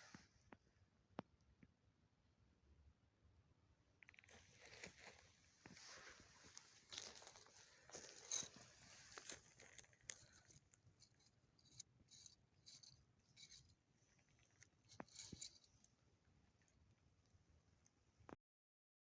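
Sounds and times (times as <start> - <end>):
light rustling: 4.2 - 15.9.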